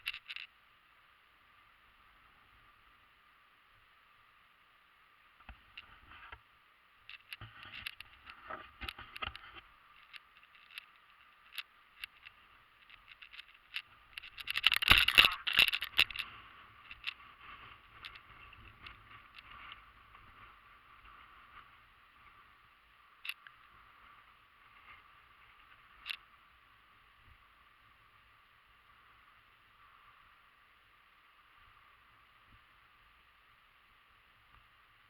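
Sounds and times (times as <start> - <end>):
sharp clicks: 10.0 - 16.2.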